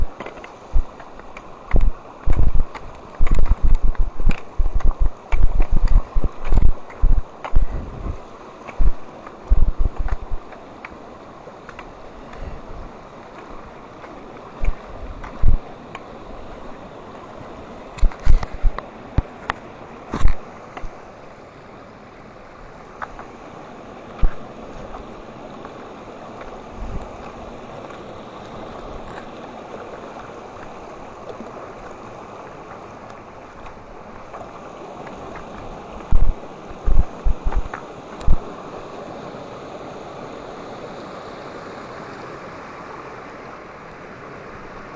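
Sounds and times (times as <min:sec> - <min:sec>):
stream rushing over cascades: 0:00.0 - 0:44.9
deep thumps: 0:01.7 - 0:08.2, 0:08.8 - 0:10.5, 0:15.4 - 0:15.6, 0:36.1 - 0:38.4.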